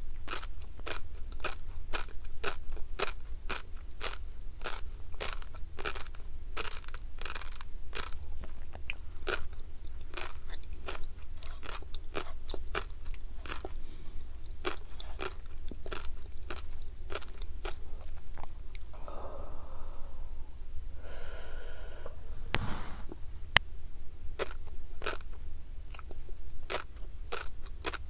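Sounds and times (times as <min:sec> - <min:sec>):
fish roe popping while chewing: 0:00.2 - 0:13.8
low steady hum: 0:07.6 - 0:27.2.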